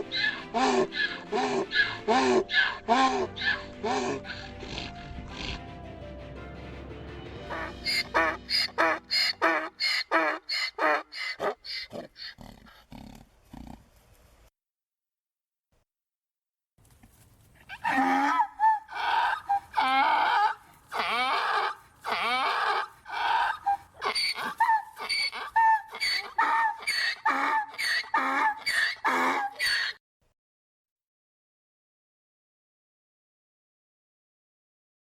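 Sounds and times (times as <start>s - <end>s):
donkey braying: 0.0s - 5.8s, 7.5s - 13.8s, 17.6s - 30.0s.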